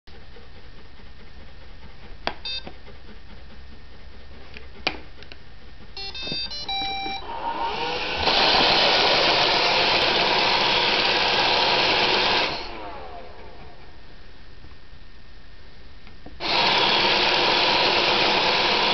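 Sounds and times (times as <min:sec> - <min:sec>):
short beeps: 0:06.0 - 0:07.2
vacuum motor running: 0:06.0 - 0:13.9, 0:16.4 - 0:18.9.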